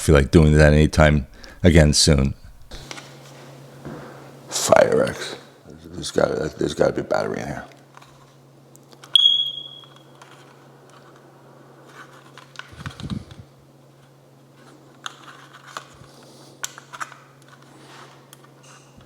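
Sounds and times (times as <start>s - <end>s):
smoke detector chirp: 9.2s - 10.0s.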